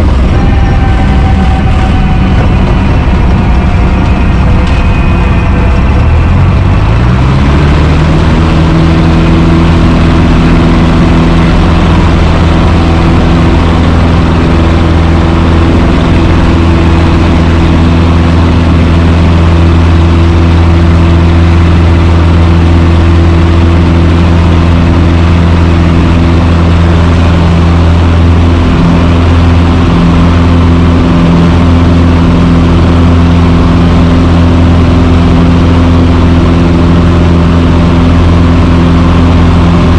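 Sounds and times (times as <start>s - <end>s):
small airplane engine drone: 0.0s - 39.9s.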